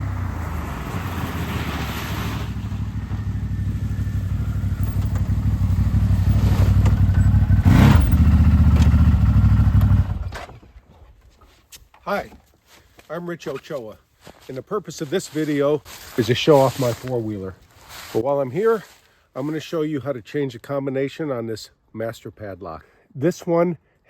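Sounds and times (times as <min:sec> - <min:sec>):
atv engine running: 0:00.0 - 0:10.4.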